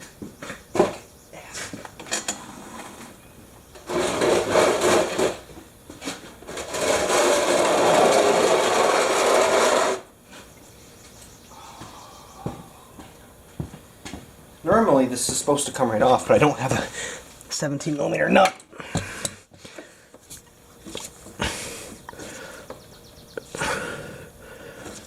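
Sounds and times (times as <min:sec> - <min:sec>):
rasping scraping noise: 0:03.8 - 0:05.4, 0:06.1 - 0:10.1.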